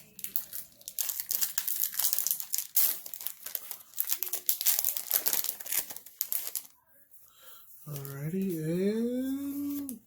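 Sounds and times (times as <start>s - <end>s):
foil wrapper crinkling: 0.0s - 6.8s.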